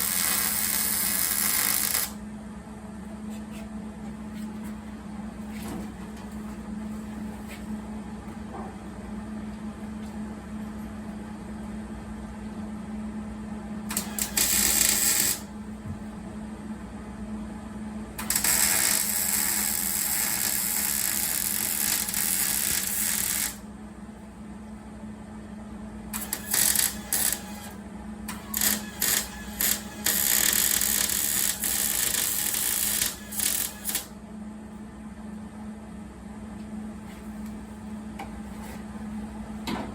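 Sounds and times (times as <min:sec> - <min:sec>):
welding arc: 0:00.0 - 0:02.2, 0:13.9 - 0:15.5, 0:18.2 - 0:23.6, 0:26.2 - 0:34.1.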